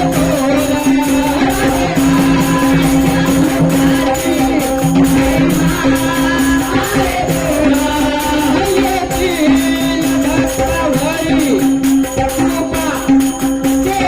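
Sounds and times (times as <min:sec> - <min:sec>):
hand drum beating: 0:00.0 - 0:14.0
person singing: 0:00.0 - 0:14.0
drone note: 0:01.3 - 0:08.8.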